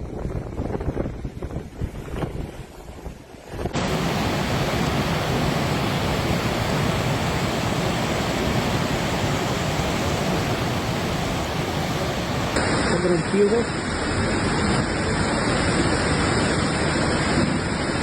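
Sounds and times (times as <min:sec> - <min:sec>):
wind buffeting microphone: 0:00.0 - 0:12.6
fast-flowing floodwater rushing: 0:03.8 - 0:18.0.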